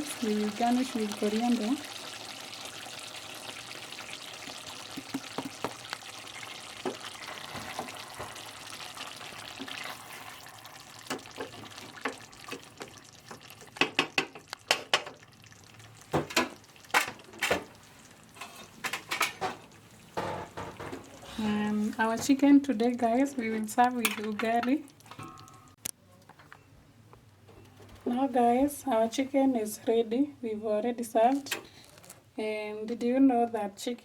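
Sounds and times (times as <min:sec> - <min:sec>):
chicken sizzling in a pan: 0:00.0 - 0:18.7.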